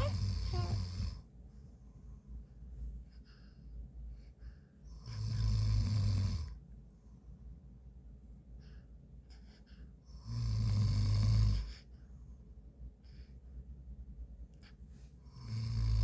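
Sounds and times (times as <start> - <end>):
man snoring: 5.2 - 6.5, 10.3 - 11.6, 15.4 - 16.0.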